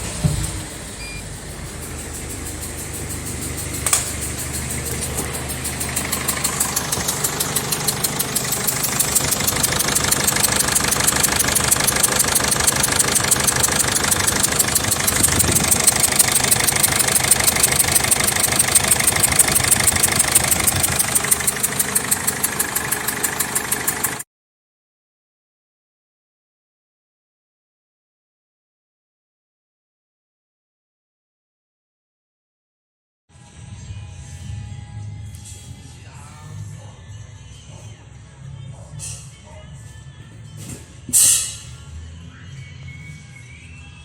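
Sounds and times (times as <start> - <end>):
diesel engine ticking: 0.0 - 24.2.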